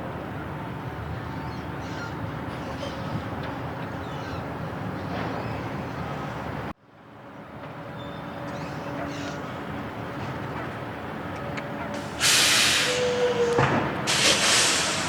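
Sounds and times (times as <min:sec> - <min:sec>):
ferry engines rumbling: 0:00.0 - 0:15.0
faint bird calls: 0:01.3 - 0:03.3, 0:03.9 - 0:04.6, 0:08.0 - 0:09.6.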